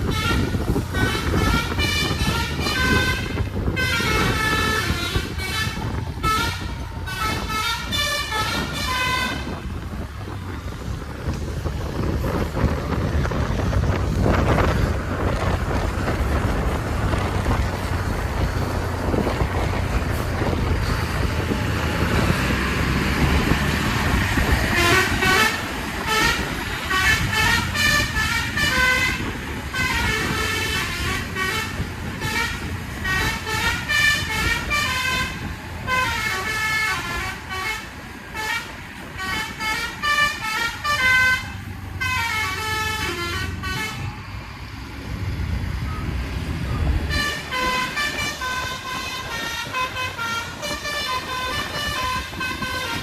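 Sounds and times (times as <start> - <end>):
bus horn playing musical tune: 0.0 - 10.3, 18.4 - 44.2, 47.0 - 53.0
bus engine: 0.0 - 53.0
road noise: 0.0 - 53.0.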